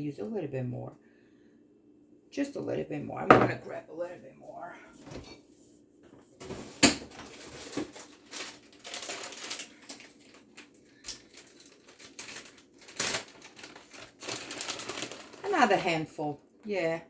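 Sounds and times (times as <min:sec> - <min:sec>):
shredded cheese rustling: 0:07.2 - 0:15.8.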